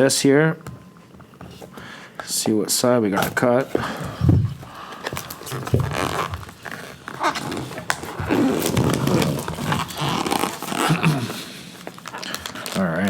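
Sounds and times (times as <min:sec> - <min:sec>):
cardboard box being cut open: 0:05.4 - 0:11.2.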